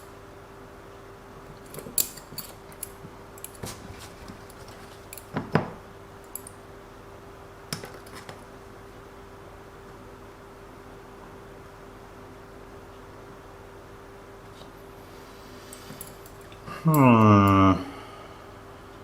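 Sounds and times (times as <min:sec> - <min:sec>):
faint steady hum: 0:00.0 - 0:19.0
small metal parts clinking: 0:01.6 - 0:03.6.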